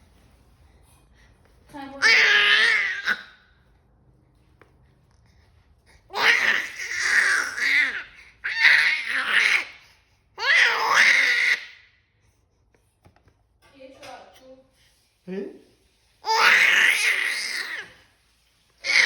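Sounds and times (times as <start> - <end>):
baby squealing: 2.0 - 3.3, 6.1 - 9.8, 10.4 - 11.8, 16.2 - 18.0.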